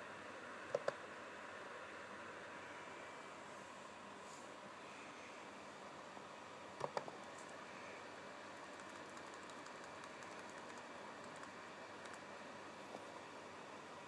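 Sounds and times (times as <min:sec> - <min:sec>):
typing on a keyboard: 0:08.7 - 0:12.3.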